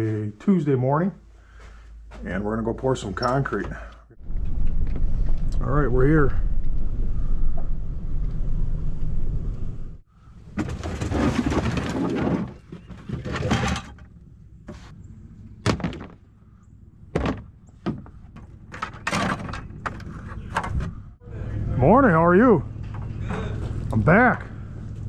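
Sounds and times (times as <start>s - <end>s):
vehicle engine rumbling: 1.2s - 25.0s
sharp knocks and thuds: 15.6s - 16.2s, 17.1s - 20.9s.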